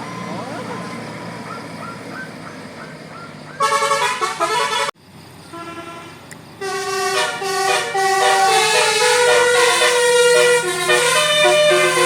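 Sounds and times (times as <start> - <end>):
bus musical horn playing a tune: 3.6 - 12.0.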